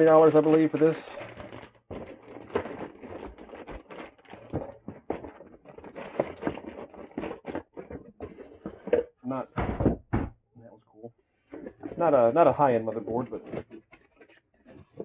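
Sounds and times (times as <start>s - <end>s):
packaging taps and rustles: 0.0s - 9.1s, 12.9s - 15.0s.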